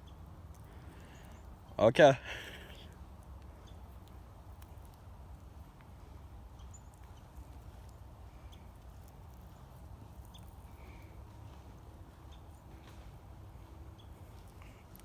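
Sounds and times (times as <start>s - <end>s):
soft ticks: 0.4s - 0.7s, 3.2s - 5.0s.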